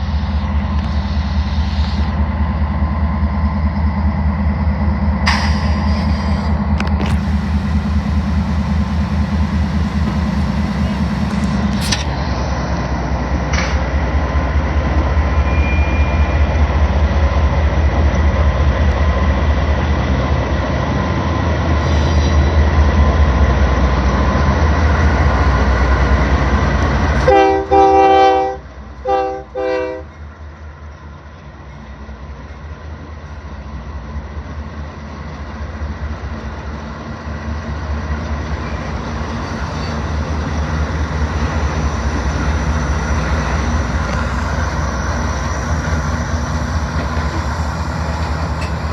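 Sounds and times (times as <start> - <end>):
train rumbling: 0.0 - 48.9
locomotive horn blasts: 27.2 - 30.1.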